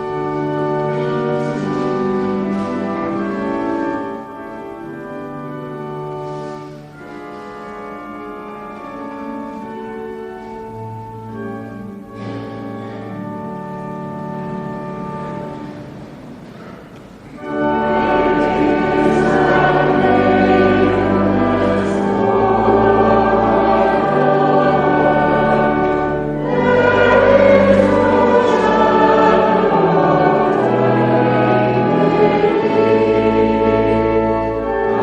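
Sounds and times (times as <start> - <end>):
choir singing a hymn: 0.0 - 5.0, 17.3 - 35.0
instrumental accompaniment: 0.0 - 35.0.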